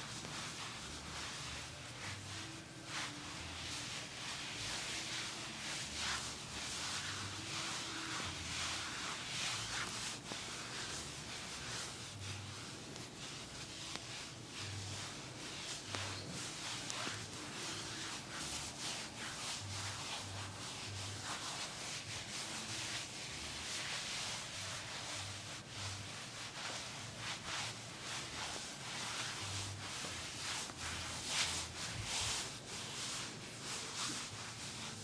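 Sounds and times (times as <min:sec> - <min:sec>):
hands rubbing skin: 0:00.0 - 0:35.0.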